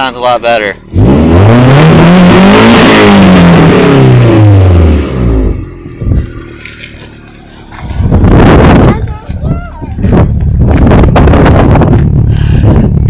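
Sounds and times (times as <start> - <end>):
vehicle engine revving: 0.0 - 13.0
engine idling: 5.2 - 13.0.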